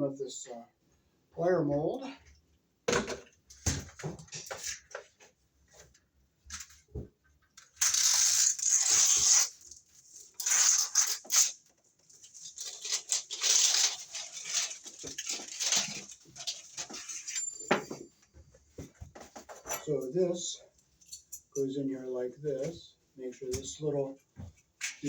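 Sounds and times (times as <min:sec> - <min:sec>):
plastic parts rustling and crinkling: 0:07.6 - 0:20.1.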